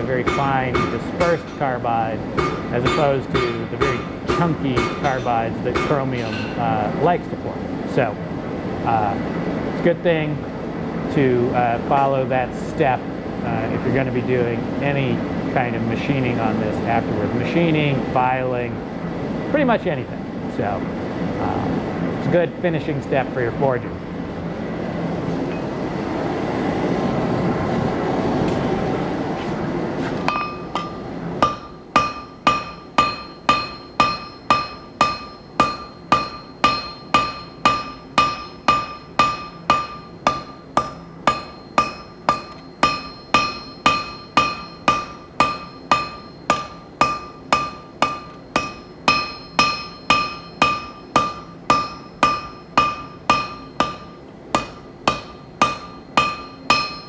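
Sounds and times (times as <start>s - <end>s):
hammer striking steel on anvil: 0.0s - 6.9s, 30.3s - 57.0s.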